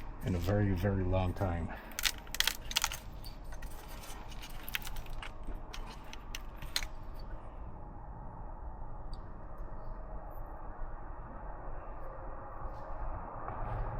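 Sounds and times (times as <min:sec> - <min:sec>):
hand tools clinking: 0:01.8 - 0:07.2.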